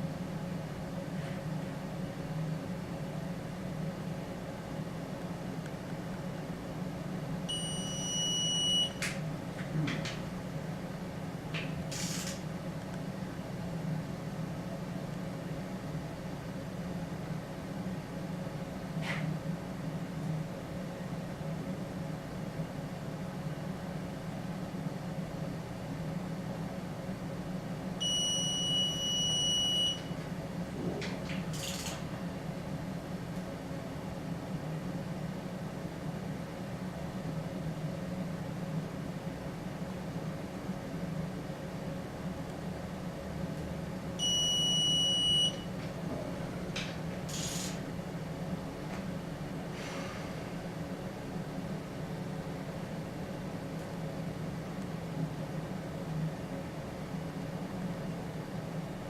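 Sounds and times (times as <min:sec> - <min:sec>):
low steady hum: 0:00.0 - 0:11.4, 0:19.5 - 0:31.4, 0:32.0 - 0:47.2
faint short hisses: 0:47.3 - 0:47.8, 0:49.7 - 0:50.5.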